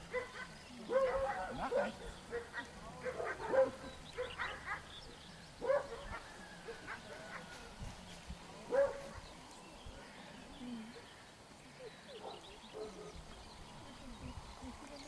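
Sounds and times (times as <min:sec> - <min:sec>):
dog barking: 0:00.1 - 0:04.9, 0:05.6 - 0:06.2, 0:08.7 - 0:09.1.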